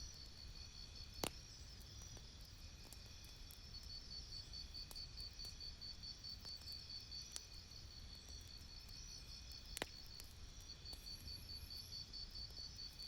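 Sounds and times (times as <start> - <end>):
campfire crackling and popping: 0.2 - 4.0, 9.5 - 11.0.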